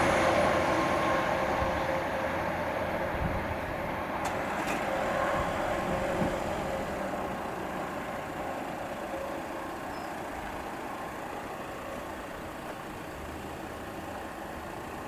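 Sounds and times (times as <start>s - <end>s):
vehicle rumble and hiss: 0.0s - 15.0s.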